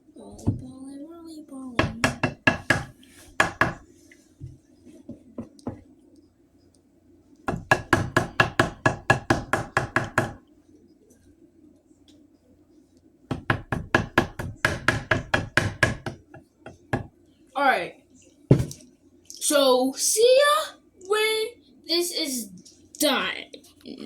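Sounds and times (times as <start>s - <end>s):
faint steady hum: 0.0s - 24.0s
knocking on hard object: 1.8s - 3.8s, 7.5s - 10.4s, 13.3s - 17.1s, 18.5s - 18.8s.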